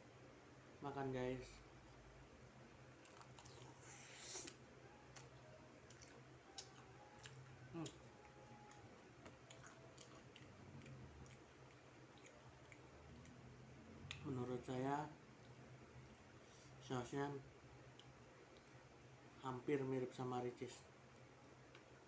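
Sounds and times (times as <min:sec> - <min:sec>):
chewing fried chicken: 0:02.9 - 0:14.3.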